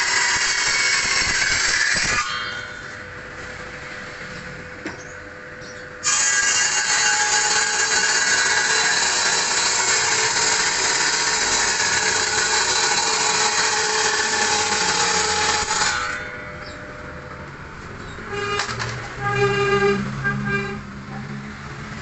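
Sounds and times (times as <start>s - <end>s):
power tool whining through wood: 6.0s - 16.4s.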